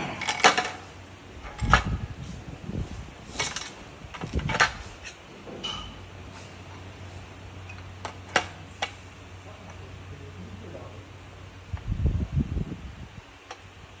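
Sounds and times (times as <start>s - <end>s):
metal tool clanking on motor: 0.0s - 2.2s, 3.2s - 6.5s.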